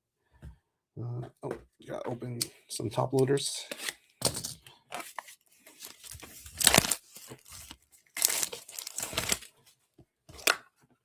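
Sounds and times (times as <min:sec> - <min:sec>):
plastic wrapping torn and crinkled: 0:05.7 - 0:09.5.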